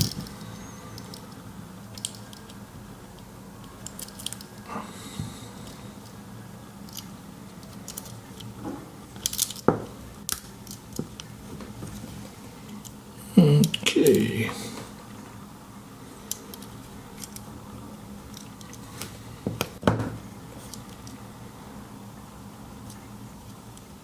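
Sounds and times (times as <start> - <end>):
clicks of small metal parts: 2.0 - 2.6.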